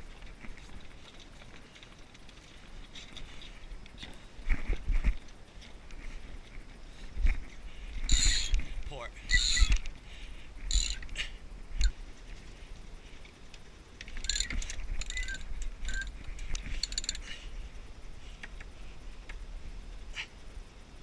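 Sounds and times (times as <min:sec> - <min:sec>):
lines and blocks squeaking: 0:08.1 - 0:08.6, 0:09.3 - 0:09.8, 0:14.2 - 0:16.1
winch ratcheting clicks: 0:08.1 - 0:08.6, 0:09.3 - 0:09.9, 0:10.7 - 0:11.2, 0:13.5 - 0:17.3.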